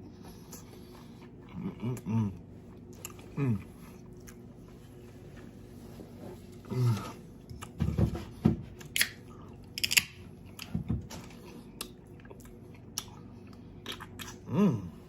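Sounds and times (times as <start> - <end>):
chewing and biting: 0.3 - 4.8, 8.8 - 14.5.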